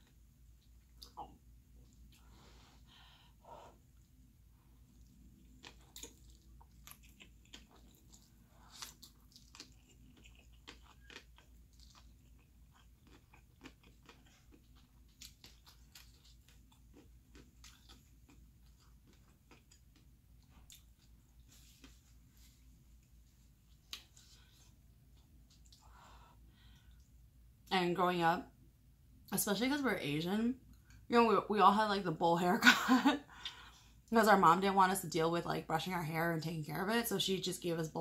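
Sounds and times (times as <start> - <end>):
chewing food: 4.0 - 27.2
crunch: 5.1 - 22.5.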